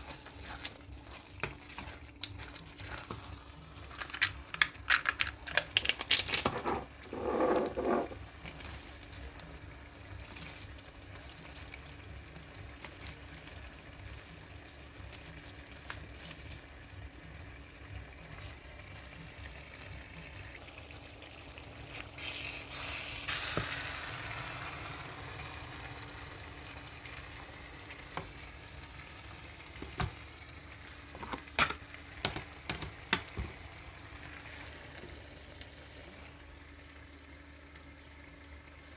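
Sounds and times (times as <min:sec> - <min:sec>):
food sizzling in a pan: 0:00.0 - 0:38.9.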